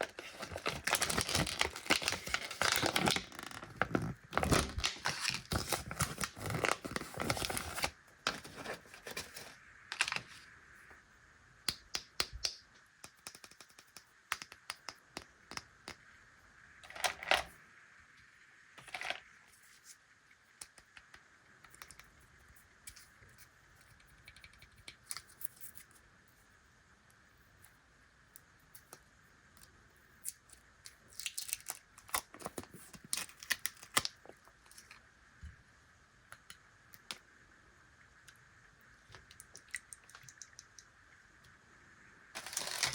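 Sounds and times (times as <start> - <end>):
plastic wrappers crinkling: 0.0 - 10.3, 42.4 - 42.9.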